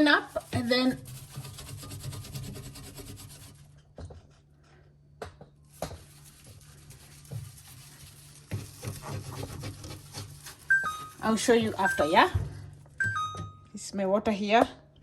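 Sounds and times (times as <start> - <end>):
cloth wiping a fridge: 0.0 - 4.5, 5.6 - 12.8.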